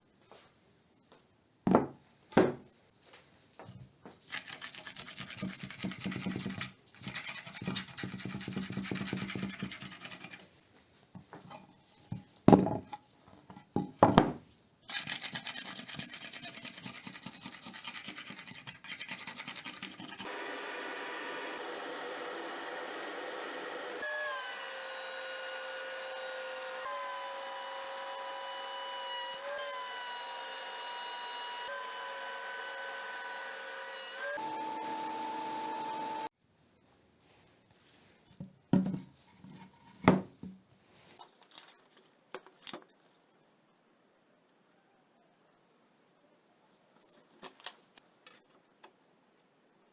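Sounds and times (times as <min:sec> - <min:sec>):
sawing or rasping wood: 0:04.3 - 0:10.4, 0:14.9 - 0:34.4
power tool motor running: 0:20.2 - 0:36.3.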